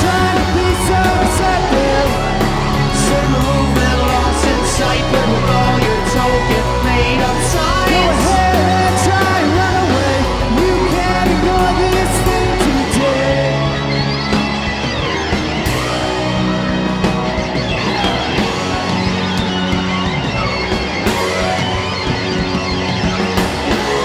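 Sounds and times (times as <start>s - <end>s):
person singing: 0.0s - 14.2s
bass: 0.0s - 24.0s
drums: 0.0s - 24.0s
electric guitar: 0.0s - 24.0s.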